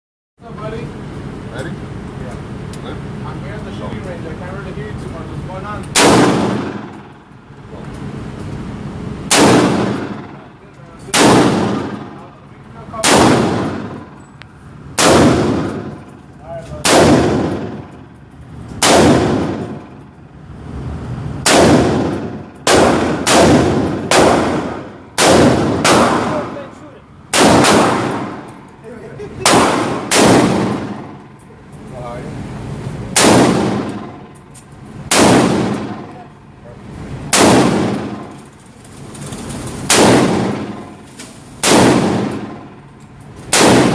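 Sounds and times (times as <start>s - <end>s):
rifle shots with echo: 6.0s - 7.3s, 9.3s - 12.4s, 13.0s - 14.2s, 15.0s - 16.2s, 16.8s - 18.1s, 18.8s - 20.0s, 21.4s - 26.7s, 27.3s - 28.7s, 29.4s - 31.4s, 33.1s - 34.4s, 35.0s - 36.2s, 37.3s - 38.4s, 39.9s - 42.8s, 43.5s - 43.9s.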